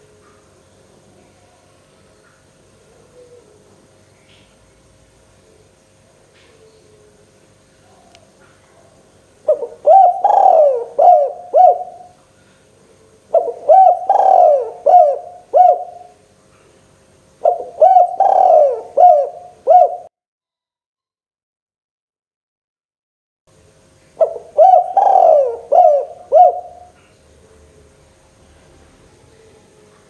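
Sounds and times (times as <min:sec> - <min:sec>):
dove cooing: 0:02.8 - 0:03.9, 0:06.4 - 0:12.2, 0:12.9 - 0:16.2, 0:17.4 - 0:20.1, 0:24.2 - 0:28.0.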